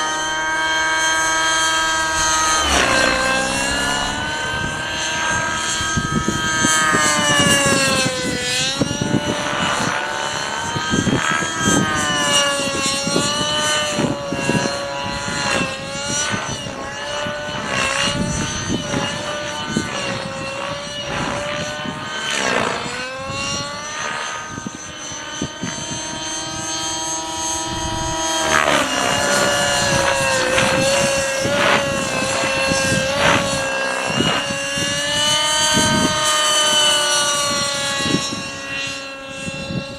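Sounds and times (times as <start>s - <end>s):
rc helicopter engine and rotor whine: 0.0s - 39.9s.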